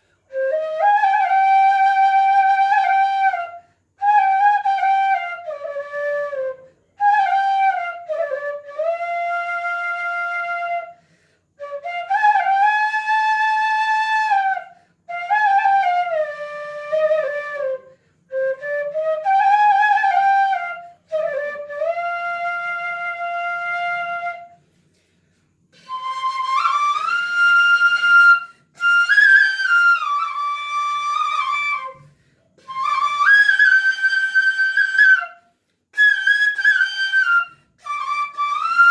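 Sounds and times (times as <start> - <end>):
bamboo flute playing a folk tune: 0.3 - 11.0, 11.6 - 24.6, 25.8 - 38.9
breaths between flute phrases: 11.0 - 11.6.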